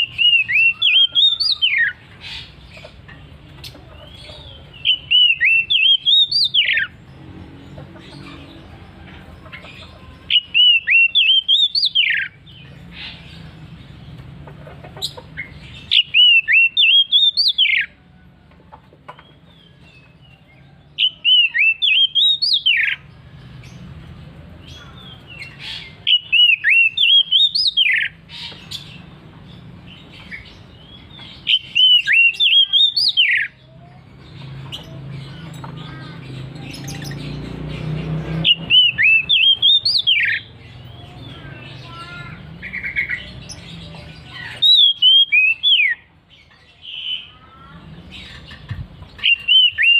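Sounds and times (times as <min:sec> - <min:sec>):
bird singing rising whistled notes: 0:38.4 - 0:40.5.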